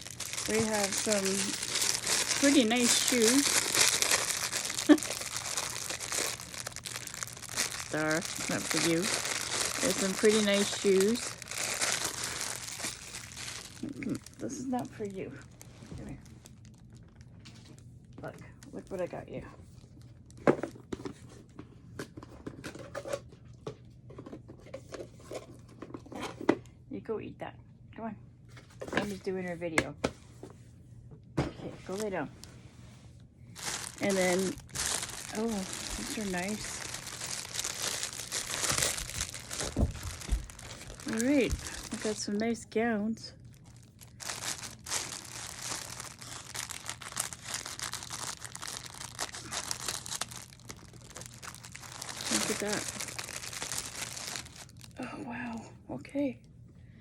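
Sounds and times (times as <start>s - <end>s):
plastic packaging rustling: 0.0s - 21.6s, 31.8s - 32.6s, 33.5s - 42.7s, 43.3s - 55.0s.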